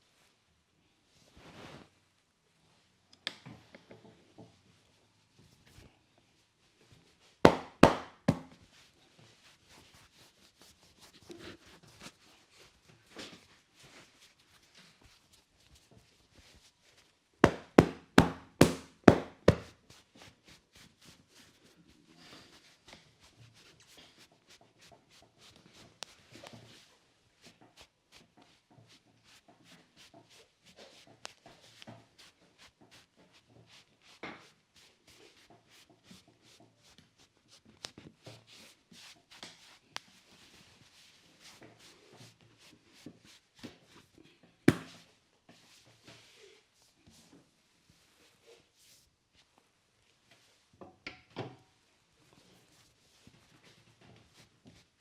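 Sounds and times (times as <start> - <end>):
rustles and taps on hair: 6.8 - 21.8, 22.5 - 51.6
hand slaps: 7.5 - 8.5, 17.4 - 19.7, 44.7 - 45.0.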